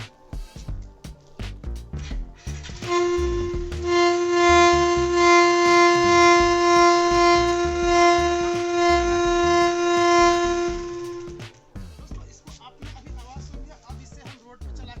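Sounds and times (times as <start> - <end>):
motorcycle engine rumble: 0.7 - 14.2
exhaust whistle tone: 2.7 - 11.4.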